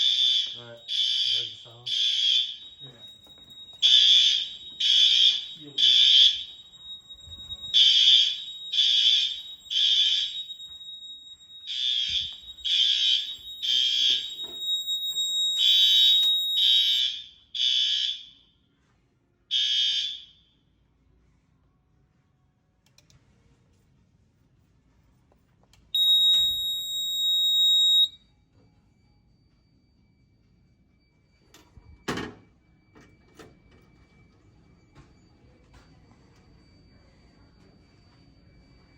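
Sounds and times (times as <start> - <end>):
fire alarm horn blasts: 0.0 - 18.6, 19.5 - 20.5, 25.9 - 28.2.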